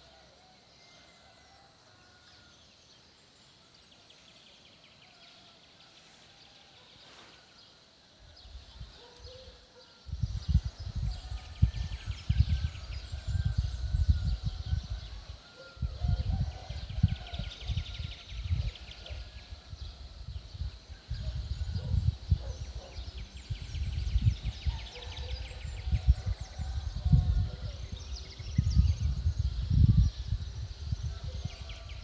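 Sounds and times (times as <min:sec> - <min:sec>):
birds singing trills and chirps: 0:00.0 - 0:32.0
wind gusts buffeting microphone: 0:10.1 - 0:32.0.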